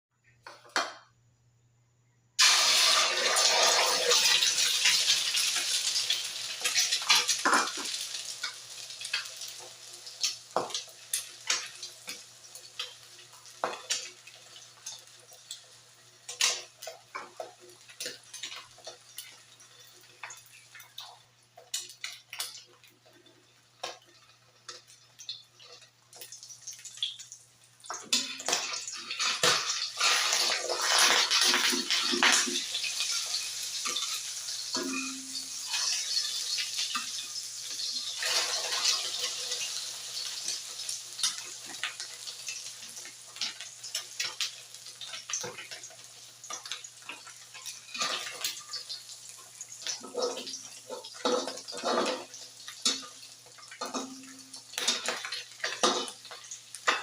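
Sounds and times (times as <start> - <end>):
egg sizzling in oil: 2.4 - 57.0.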